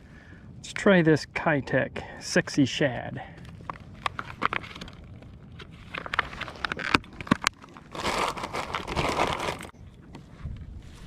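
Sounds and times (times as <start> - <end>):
plastic packaging crinkling: 3.4 - 9.7.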